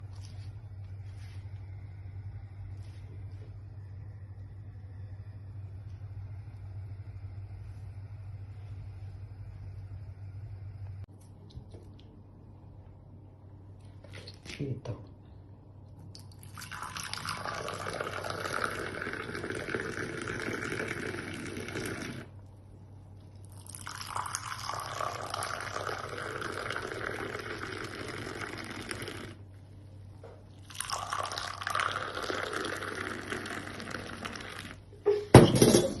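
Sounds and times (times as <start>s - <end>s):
tea pouring into glasses: 16.2s - 22.3s, 23.4s - 29.4s, 30.6s - 34.8s.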